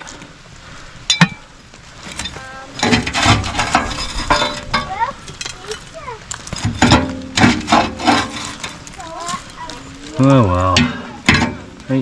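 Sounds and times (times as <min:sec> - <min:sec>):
metal tool scraping coals: 0:00.9 - 0:12.0
metal clink: 0:01.1 - 0:01.5.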